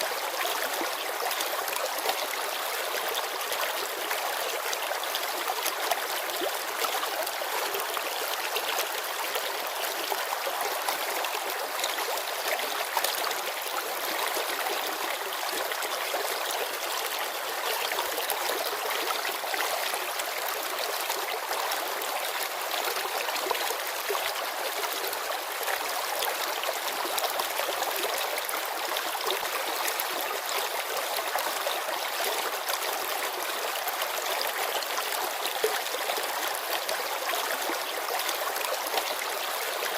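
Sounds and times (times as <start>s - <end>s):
river babbling over stones: 0.0s - 39.9s.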